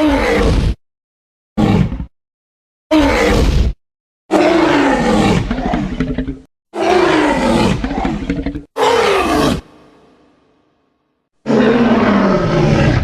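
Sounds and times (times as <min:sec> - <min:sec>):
creature roars: 0:00.0 - 0:00.8, 0:02.9 - 0:09.7, 0:11.4 - 0:13.0.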